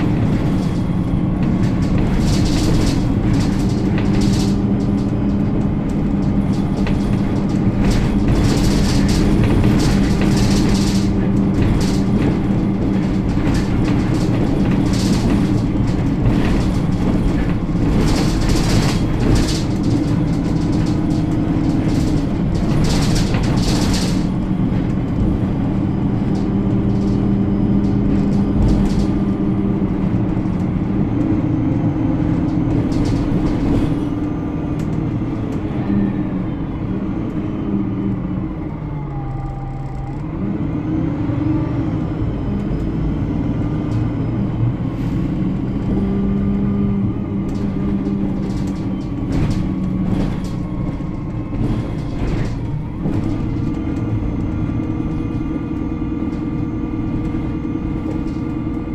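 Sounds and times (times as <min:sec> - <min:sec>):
rattles: 0:00.0 - 0:37.4, 0:41.9 - 0:58.9
bus engine running: 0:00.0 - 0:58.9.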